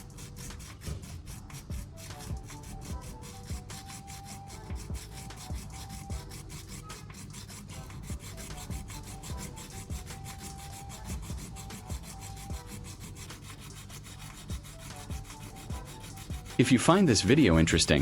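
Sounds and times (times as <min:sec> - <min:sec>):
sandpaper rubbing on circuit board: 0:00.0 - 0:18.0.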